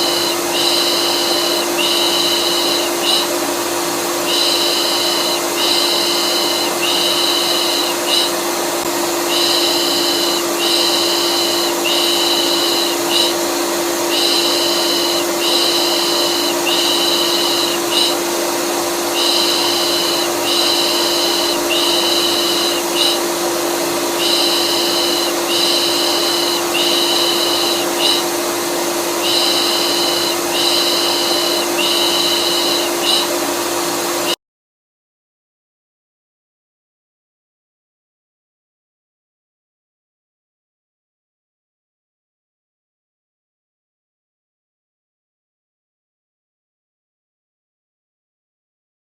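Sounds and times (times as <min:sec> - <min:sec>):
vacuum cleaner running: 0:00.0 - 0:34.4.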